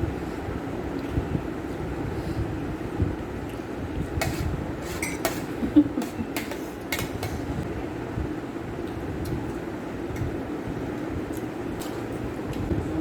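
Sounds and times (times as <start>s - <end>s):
utensils clinking on dishes: 4.2s - 7.5s.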